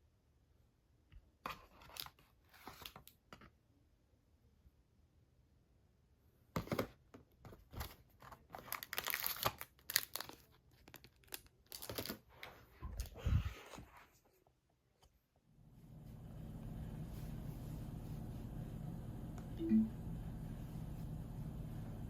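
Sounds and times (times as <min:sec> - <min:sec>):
packaging tearing and crinkling: 0:07.7 - 0:13.2.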